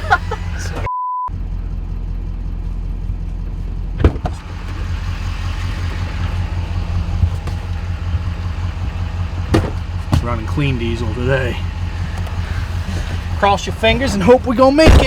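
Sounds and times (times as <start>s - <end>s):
diesel engine rumbling: 0.0s - 15.0s.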